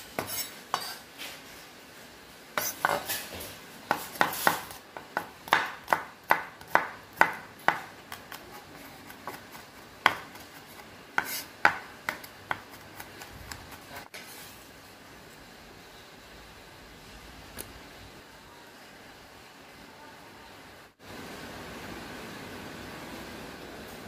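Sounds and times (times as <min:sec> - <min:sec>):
knife chopping on cutting board: 0:02.6 - 0:03.2, 0:03.9 - 0:14.1.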